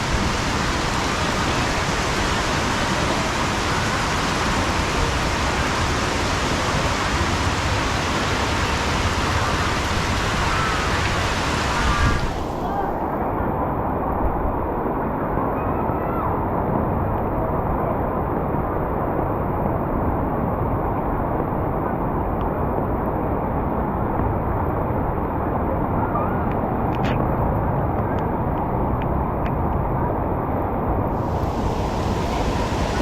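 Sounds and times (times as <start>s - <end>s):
heavy rain pouring: 0.0s - 13.5s, 31.0s - 33.0s.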